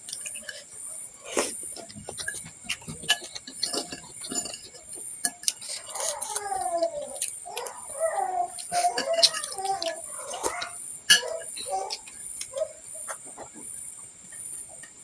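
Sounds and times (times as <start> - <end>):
chewing: 0.0 - 13.8
spoon clinking on bowl: 1.8 - 6.3, 8.6 - 12.1.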